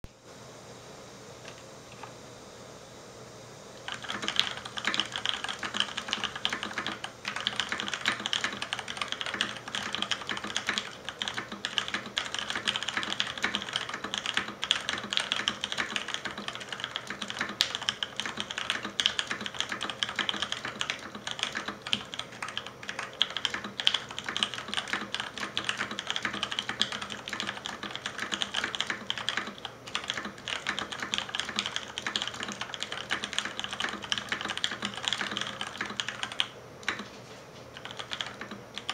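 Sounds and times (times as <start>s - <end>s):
fast typing on mechanical keyboard: 3.8s - 37.1s, 37.7s - 38.9s.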